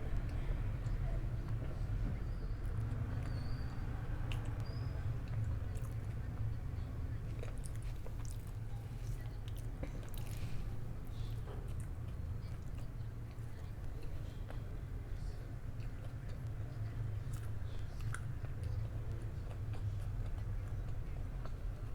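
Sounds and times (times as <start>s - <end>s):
person chewing food: 7.3s - 14.7s, 16.0s - 21.9s.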